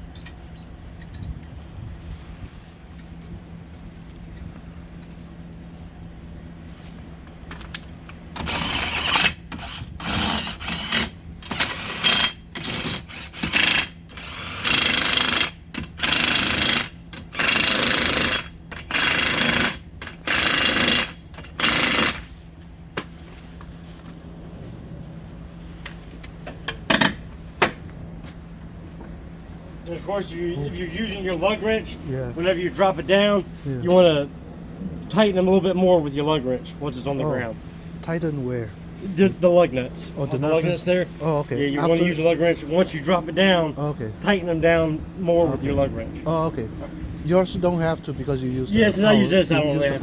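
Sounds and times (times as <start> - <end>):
steady low hum: 0.0 - 50.0
pneumatic impact wrench hammering: 7.6 - 22.4.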